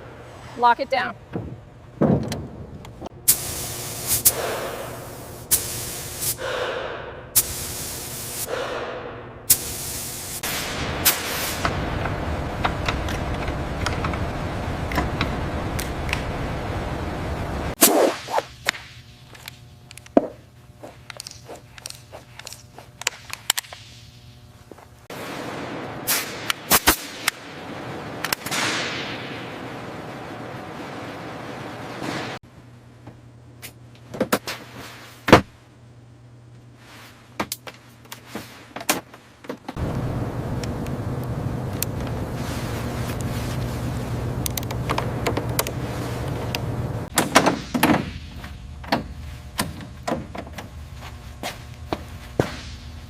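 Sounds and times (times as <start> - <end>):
steady rumbling noise: 0.0 - 17.8, 18.5 - 34.0, 39.7 - 53.0
low steady hum: 0.0 - 26.1, 27.3 - 53.0
steady noisy sound: 0.0 - 33.6, 39.5 - 53.0
sharp clicks and knocks: 44.4 - 48.1.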